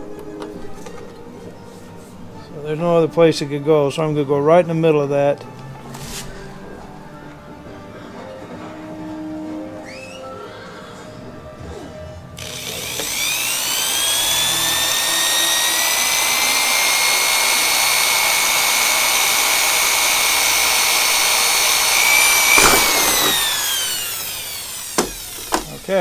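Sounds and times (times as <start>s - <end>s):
electric drill whining: 12.4s - 26.0s.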